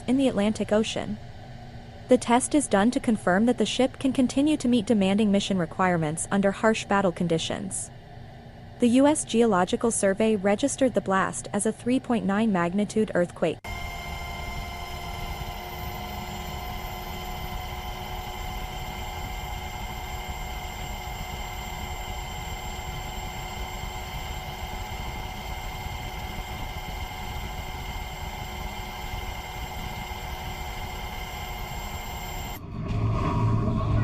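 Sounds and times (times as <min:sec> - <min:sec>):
aircraft engine whine: 0:13.6 - 0:34.0.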